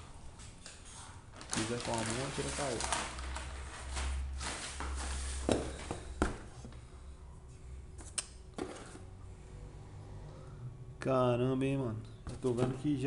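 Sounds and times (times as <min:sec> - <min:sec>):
packaging rustling: 0:01.3 - 0:05.4.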